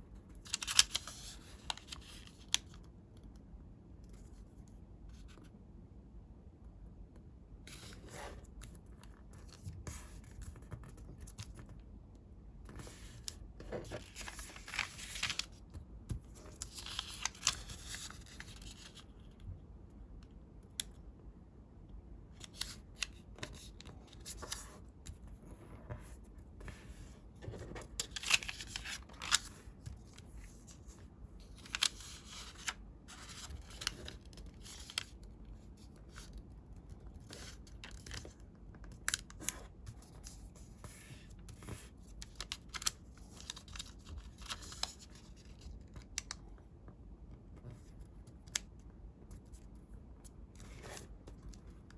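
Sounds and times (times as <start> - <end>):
paper rustling and creasing: 0.3 - 2.8, 12.7 - 19.1, 22.4 - 46.4.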